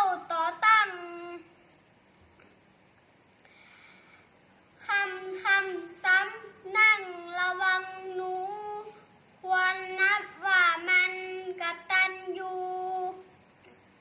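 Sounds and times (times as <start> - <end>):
child chanting a sung verse: 0.0 - 1.6, 4.8 - 13.4.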